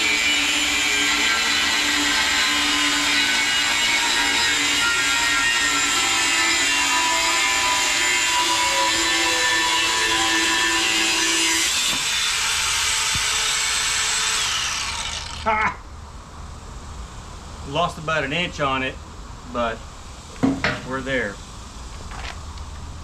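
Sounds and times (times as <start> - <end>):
angle grinder cutting steel: 0.0 - 15.6.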